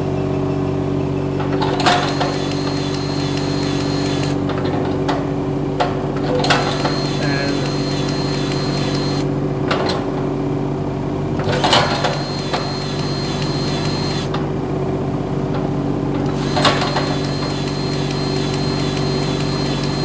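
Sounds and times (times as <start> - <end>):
diesel engine idling: 0.9 - 20.0.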